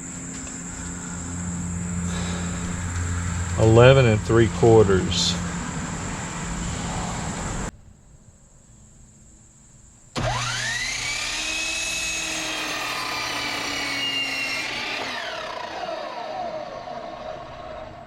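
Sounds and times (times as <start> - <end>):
miter saw motor whine: 0.0 - 7.7, 10.1 - 18.0
saw cutting wood board: 10.2 - 18.0.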